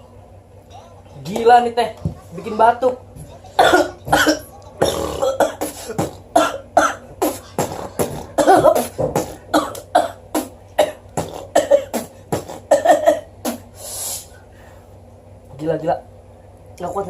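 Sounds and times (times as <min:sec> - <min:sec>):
person coughing hard: 0:03.6 - 0:13.6.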